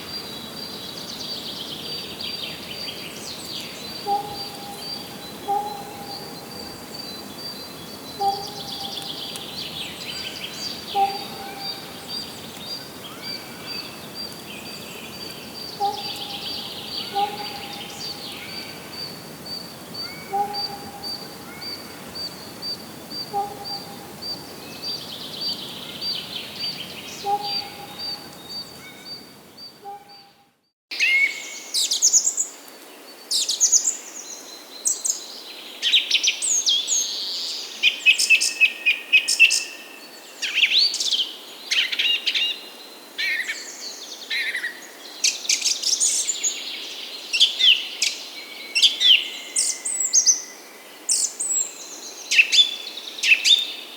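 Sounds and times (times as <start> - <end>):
birds singing trills and whistles: 0.0 - 30.4, 31.0 - 53.9
lower bird call: 0.0 - 30.4.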